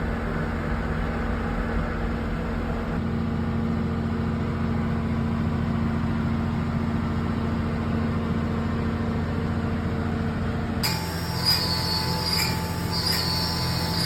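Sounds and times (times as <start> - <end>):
high-pitched cutting whine: 10.8 - 14.0
milling machine hum: 10.8 - 14.0.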